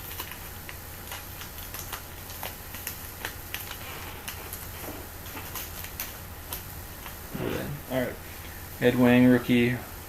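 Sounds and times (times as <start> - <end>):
foil card pack crinkling: 0.0 - 7.2
steady low hum: 0.4 - 10.0.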